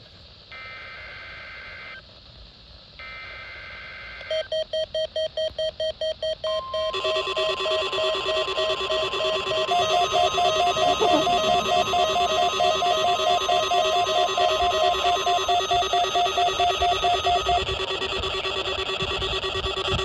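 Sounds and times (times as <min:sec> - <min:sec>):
layered electronic beeping: 0:06.9 - 0:20.0
steady electronic tone: 0:06.9 - 0:20.0.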